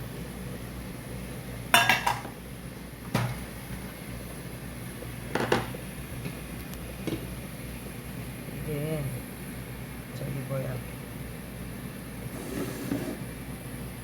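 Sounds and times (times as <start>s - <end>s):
pot and utensils clattering: 1.8s - 2.4s.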